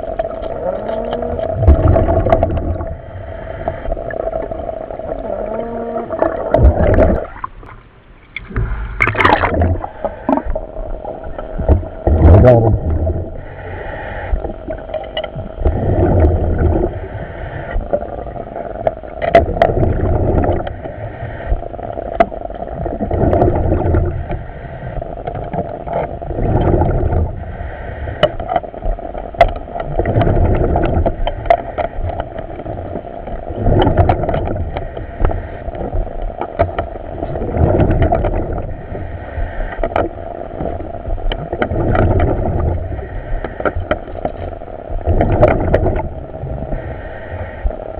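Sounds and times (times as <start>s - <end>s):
diver exhaust bubbling: 0.0s - 7.7s, 8.5s - 13.5s.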